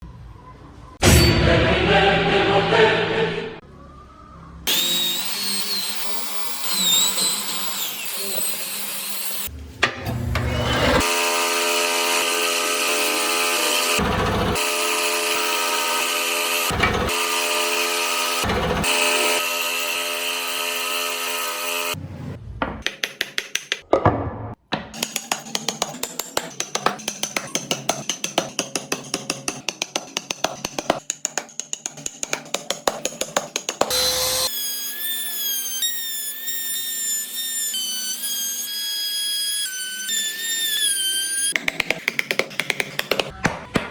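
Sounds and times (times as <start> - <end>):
power tool whining: 4.7 - 22.0, 33.8 - 41.6
motor hum: 9.5 - 22.0.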